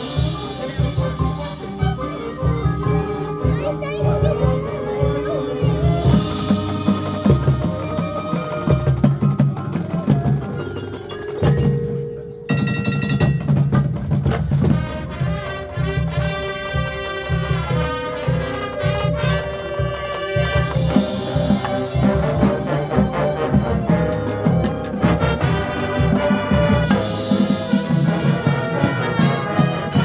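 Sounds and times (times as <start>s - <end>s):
bell-like mallet tones: 0.0s - 13.8s
drum hits: 0.0s - 30.0s
brass playing: 13.7s - 30.0s.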